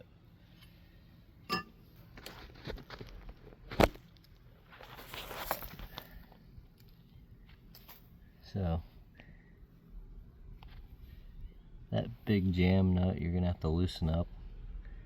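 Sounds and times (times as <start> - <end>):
metal clinks and knocks: 1.5 - 1.8.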